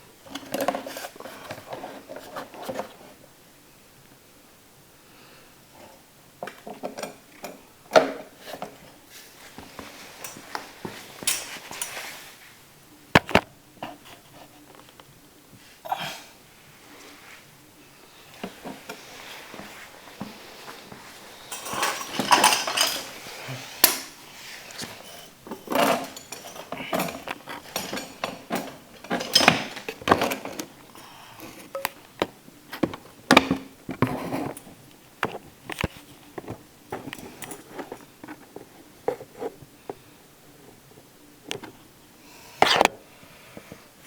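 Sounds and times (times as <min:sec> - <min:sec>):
scraping: 0:18.2 - 0:39.6
plastic housing and screws clattering: 0:21.5 - 0:23.2, 0:24.7 - 0:39.5.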